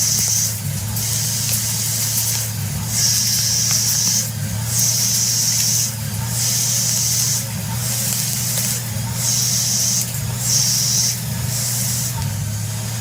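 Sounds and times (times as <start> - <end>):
hissing spray: 0.0 - 13.0
machine hum: 0.0 - 13.0.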